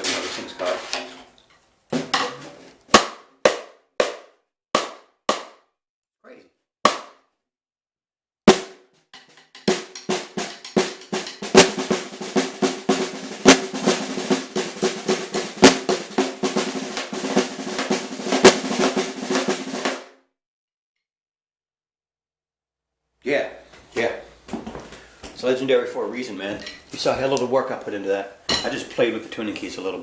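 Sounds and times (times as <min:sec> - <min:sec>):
snare drum strokes and rolls: 0:08.5 - 0:20.1.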